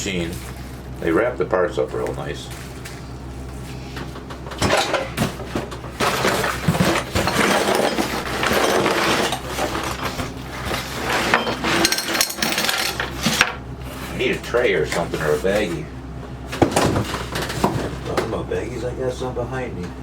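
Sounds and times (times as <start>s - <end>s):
metal parts clinking: 6.0s - 13.6s.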